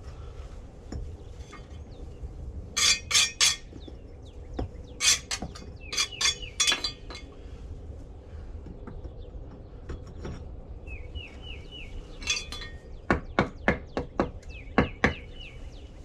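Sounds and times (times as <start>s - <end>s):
concrete pavers clinking together: 2.7s - 4.0s, 4.6s - 7.4s, 12.2s - 13.6s.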